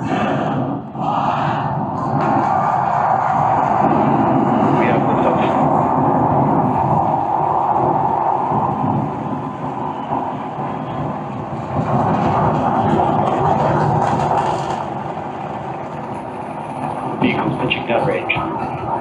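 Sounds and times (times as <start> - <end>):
rocket launch roar over speakers: 0.0 - 19.0.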